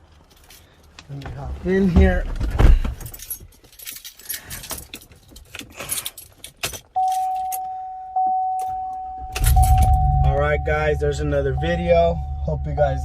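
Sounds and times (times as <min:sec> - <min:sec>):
keys jangling: 0:03.0 - 0:07.7, 0:08.6 - 0:10.1
car warning chime: 0:07.0 - 0:13.0.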